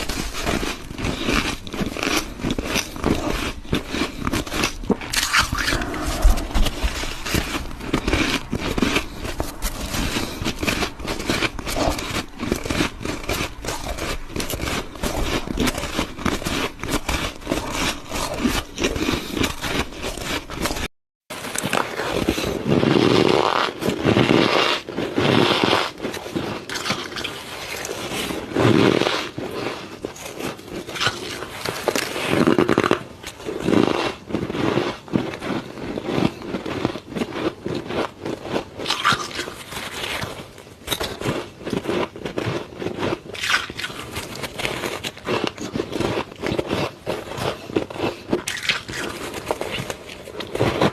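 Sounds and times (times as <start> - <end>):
crunching ice bites: 0.0 - 6.0, 6.9 - 22.3, 25.9 - 28.3, 36.2 - 50.9.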